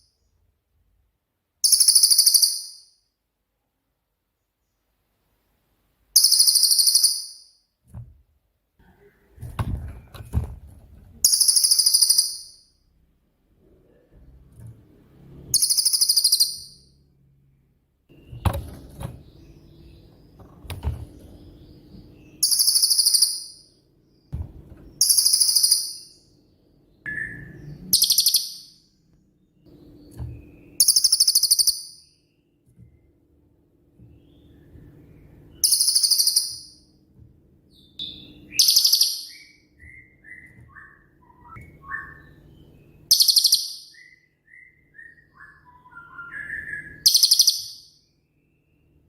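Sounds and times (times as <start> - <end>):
songbird trilling: 37.9 - 42.3, 43.1 - 47.8.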